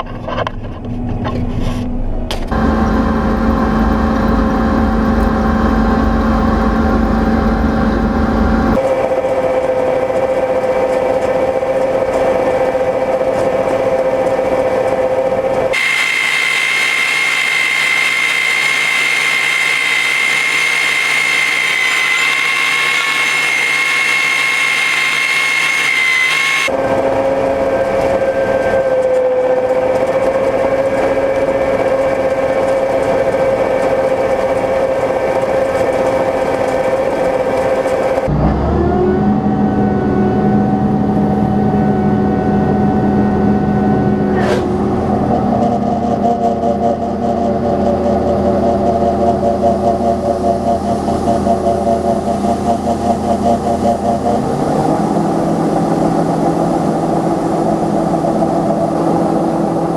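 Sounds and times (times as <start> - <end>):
farm machinery humming: 2.5 - 8.8, 15.8 - 26.7
high steady whine: 2.5 - 8.8, 15.8 - 26.7.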